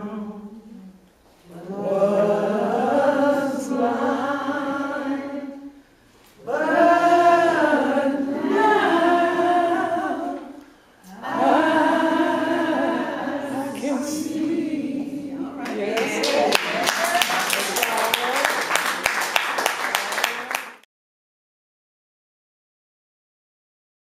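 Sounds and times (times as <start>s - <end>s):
group singing a hymn: 0.0s - 17.1s.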